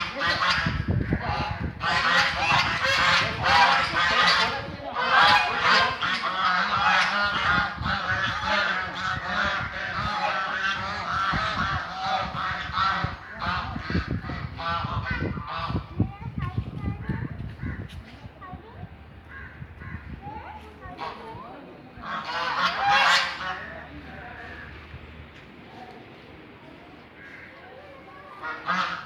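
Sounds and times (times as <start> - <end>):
flock of ducks quacking: 0.0 - 16.0, 20.9 - 24.7, 27.2 - 29.0.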